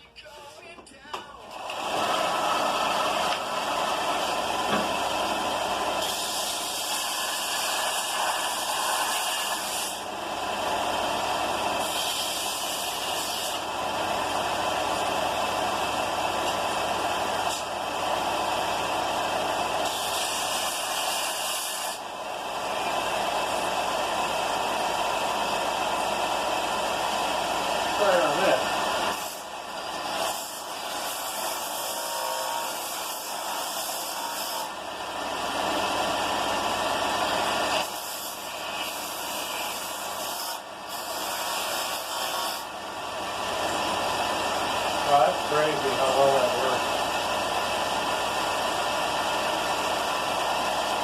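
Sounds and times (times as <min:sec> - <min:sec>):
belt sander grinding metal: 0:01.7 - 0:15.1, 0:24.7 - 0:51.0.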